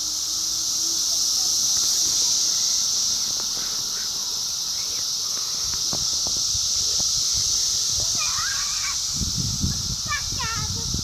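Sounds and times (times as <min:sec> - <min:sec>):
cicadas singing: 0:00.0 - 0:11.0
light thuds: 0:05.3 - 0:07.1.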